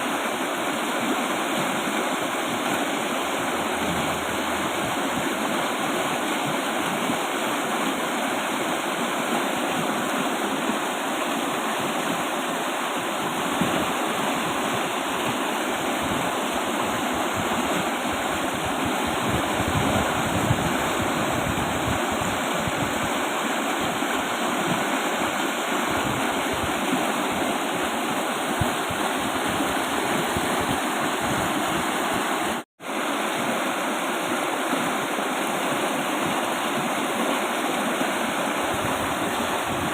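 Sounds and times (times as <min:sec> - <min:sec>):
river rushing: 0:00.0 - 0:39.9.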